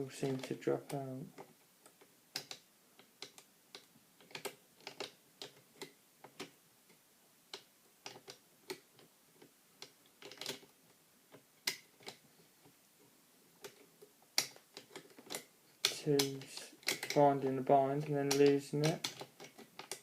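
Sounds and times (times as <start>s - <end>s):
lock pick clicking in lock: 16.8s - 17.2s.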